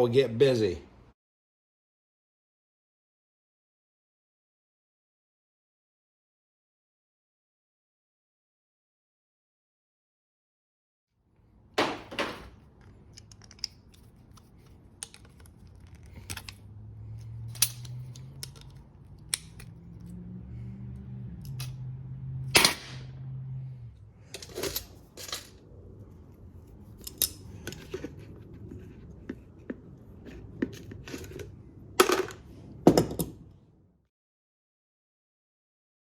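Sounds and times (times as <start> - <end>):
plastic parts knocking: 11.8 - 12.6
low hum: 12.6 - 32.5.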